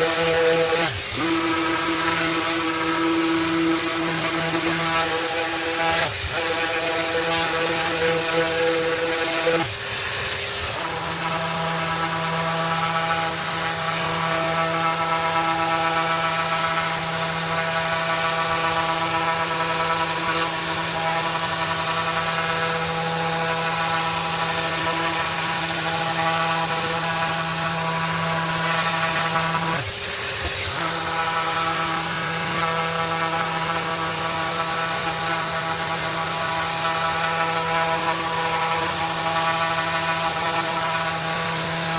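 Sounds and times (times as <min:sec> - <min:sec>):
orbital sander running: 0:00.0 - 0:41.9.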